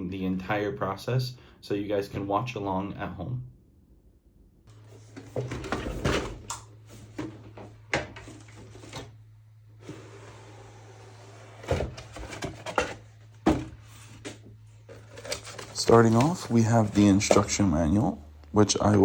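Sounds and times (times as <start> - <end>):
cardboard box being handled: 11.4 - 14.4.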